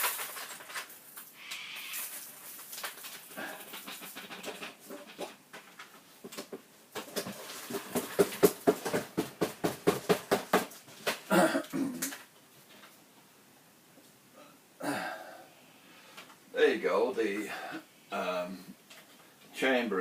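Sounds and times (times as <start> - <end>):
knocking on plastic vacuum bin: 7.9 - 10.7.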